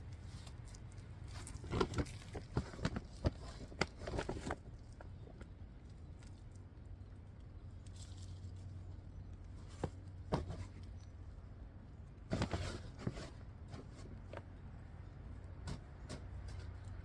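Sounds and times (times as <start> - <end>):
rustles and knocks: 9.6 - 11.0, 12.3 - 14.5, 15.5 - 17.0.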